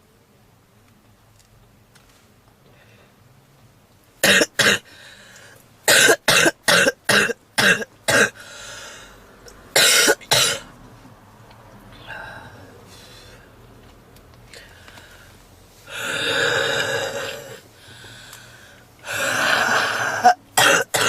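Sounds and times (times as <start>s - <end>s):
woman coughing heavily: 4.2s - 4.9s, 5.9s - 8.4s, 9.8s - 10.7s, 19.1s - 21.0s
wheezy breaths: 4.8s - 5.6s, 8.3s - 9.3s, 12.0s - 13.6s, 14.5s - 20.4s.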